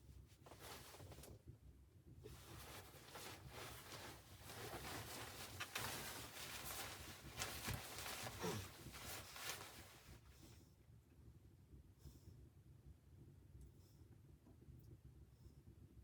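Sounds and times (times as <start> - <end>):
rustling and scuffing: 0.4 - 1.4, 2.3 - 10.2.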